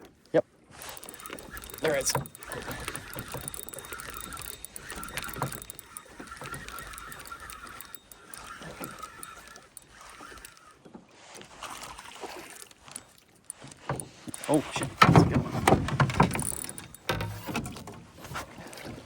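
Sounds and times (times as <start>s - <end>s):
fishing reel whirring: 0.7s - 19.0s.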